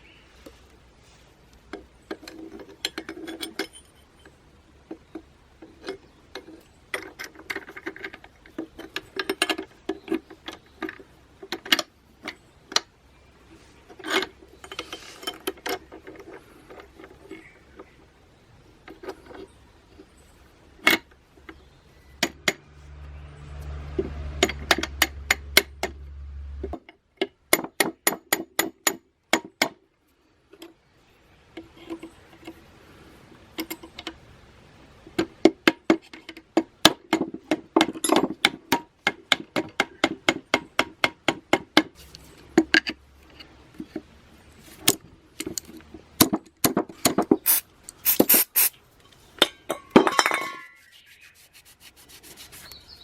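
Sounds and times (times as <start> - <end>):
metal tools tapping and clinking: 1.7 - 12.9, 35.2 - 44.0, 44.8 - 50.9.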